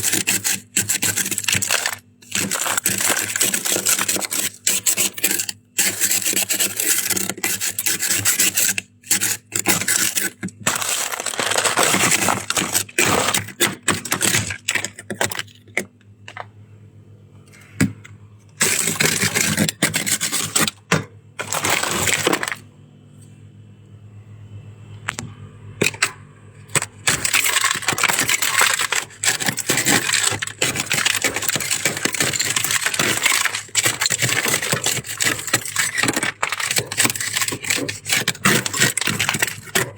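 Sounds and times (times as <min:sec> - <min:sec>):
chewing crunchy shaved ice: 0:00.0 - 0:13.6, 0:26.9 - 0:39.9.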